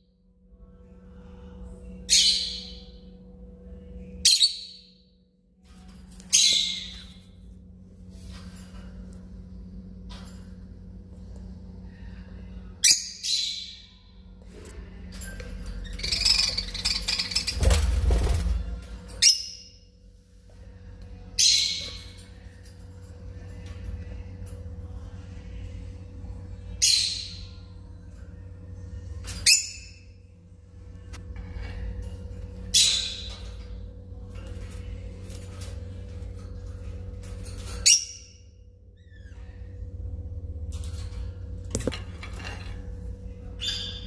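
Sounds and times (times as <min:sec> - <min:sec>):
steady low hum: 0:00.0 - 0:44.0
birds chattering: 0:15.1 - 0:18.0
lovebirds shrill calls: 0:15.9 - 0:17.8.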